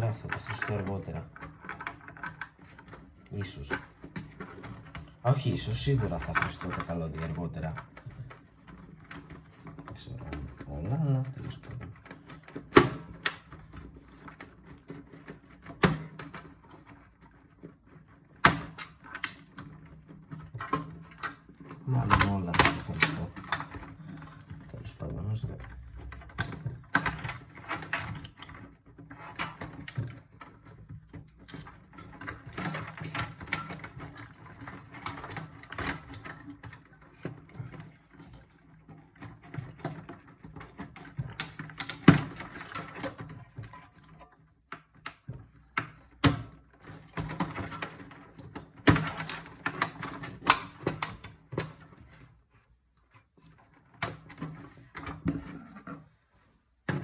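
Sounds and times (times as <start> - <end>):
clicks and knocks of computer parts: 11.3 - 52.4.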